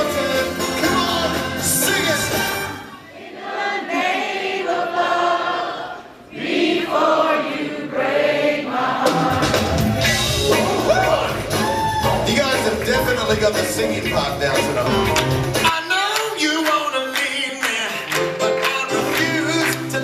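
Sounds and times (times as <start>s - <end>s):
drums: 0.0s - 2.9s, 8.9s - 20.0s
vocal group singing in harmony: 0.0s - 11.9s
bass guitar: 9.3s - 15.7s.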